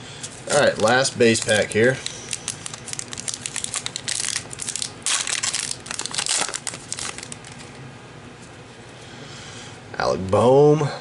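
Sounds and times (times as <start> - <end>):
plastic wrapper crinkling: 0.4 - 7.8.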